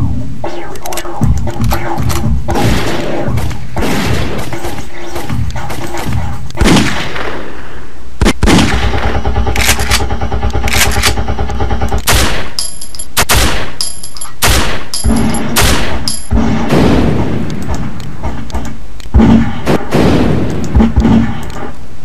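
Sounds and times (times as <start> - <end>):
rapid repeated fire: 0.4 - 12.6, 13.2 - 13.8, 14.4 - 21.7
gunshot-like blasts: 6.6 - 7.5, 14.4 - 17.5, 19.2 - 21.4.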